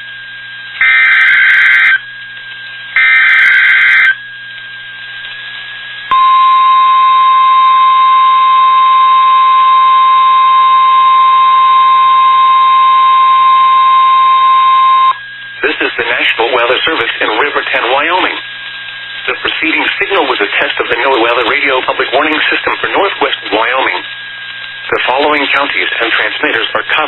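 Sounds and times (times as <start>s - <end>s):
harsh digital data bursts: 0.8s - 2.1s, 3.0s - 4.2s
steady warning alarm tone: 0.8s - 2.2s, 3.0s - 4.4s, 6.1s - 18.7s.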